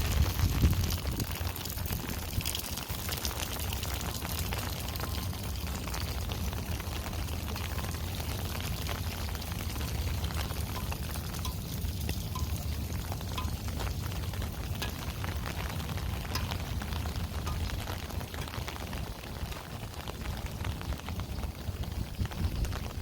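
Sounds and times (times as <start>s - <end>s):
rain hissing: 0.0s - 23.0s.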